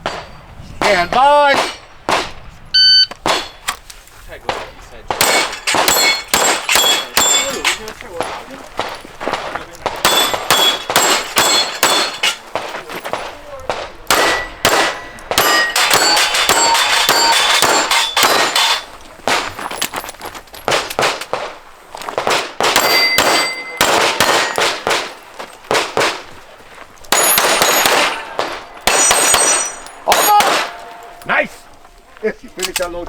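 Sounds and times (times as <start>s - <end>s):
bullets ringing on steel targets: 0.0s - 2.2s, 4.5s - 13.4s, 14.0s - 19.9s, 22.6s - 26.2s, 27.1s - 31.5s
pistol shots: 0.0s - 2.4s, 3.1s - 3.8s, 4.4s - 19.6s, 20.7s - 26.5s, 27.1s - 31.2s.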